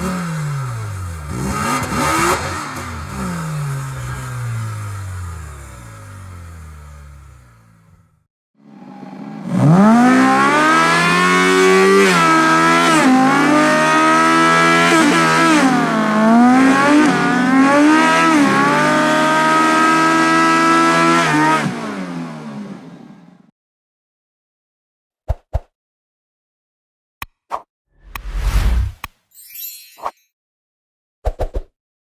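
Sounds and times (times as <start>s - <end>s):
car engine revving: 0.0s - 22.9s.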